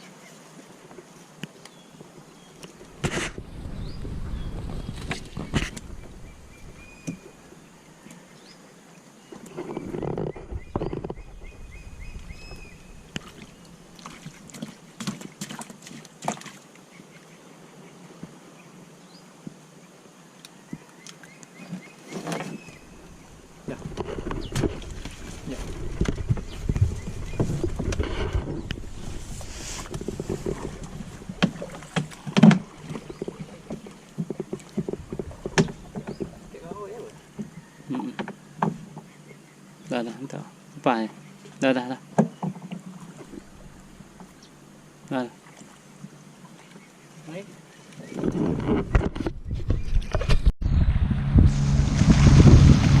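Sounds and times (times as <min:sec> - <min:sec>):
water and boat noise: 0:00.0 - 0:53.0
water splashing against boat: 0:09.3 - 0:16.8, 0:21.6 - 0:37.6
gear knocking in boat: 0:29.8 - 0:36.6.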